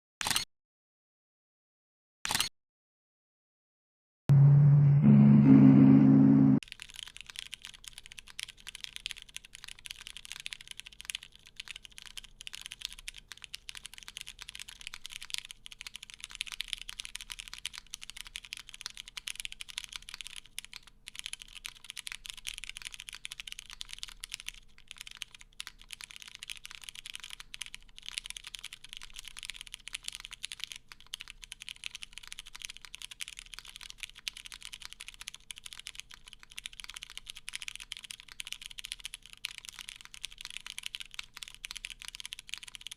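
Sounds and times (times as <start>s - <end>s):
fast mechanical keyboard typing: 6.6s - 42.9s.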